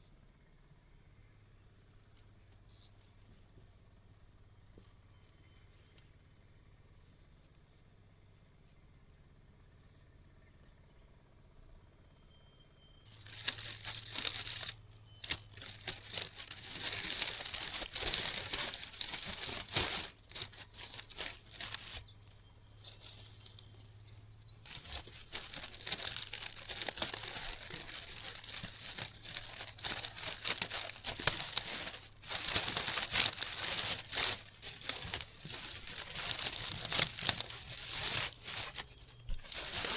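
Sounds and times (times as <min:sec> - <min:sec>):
crackling crinkling rustle: 0:13.1 - 0:39.9.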